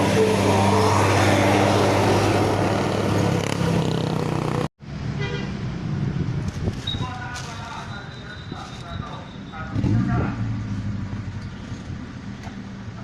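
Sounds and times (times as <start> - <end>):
bus engine humming: 0.0 - 6.8
musical bus horn tune: 5.2 - 5.6.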